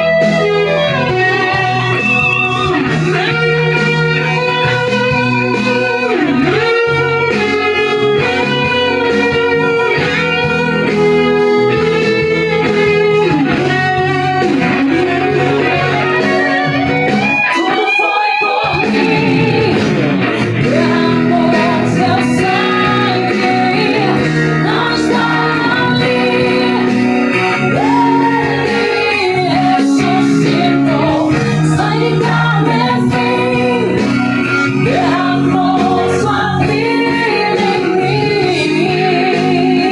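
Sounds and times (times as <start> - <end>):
electric guitar melodic runs: 0.0 - 39.9
recorded gospel song: 0.0 - 39.9
woman singing: 17.5 - 19.9, 20.5 - 39.9.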